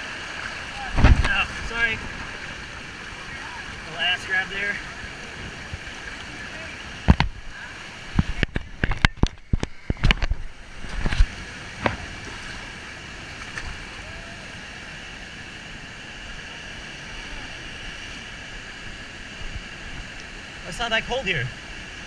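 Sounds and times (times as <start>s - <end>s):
sharp knocks and splashes: 0.0s - 2.5s, 7.0s - 7.5s, 8.1s - 12.7s, 13.4s - 13.8s
waterfall rushing: 0.0s - 22.0s.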